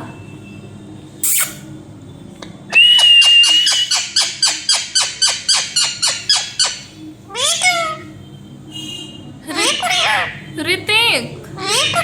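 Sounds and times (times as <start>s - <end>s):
parrot calling: 2.7s - 8.2s, 9.5s - 10.6s, 11.6s - 12.0s.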